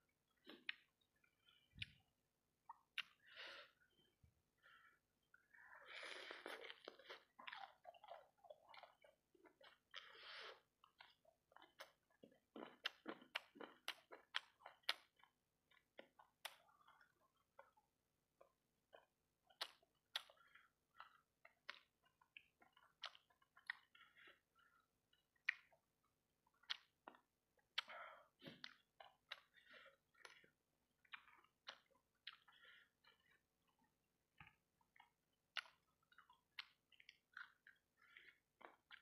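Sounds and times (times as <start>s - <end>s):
wet mouth clicks and smacks: 2.7s - 3.3s, 19.5s - 23.9s, 25.4s - 25.8s, 26.5s - 28.0s, 28.6s - 29.6s, 30.2s - 33.4s, 34.4s - 39.0s
person chewing crunchy food: 5.4s - 39.0s.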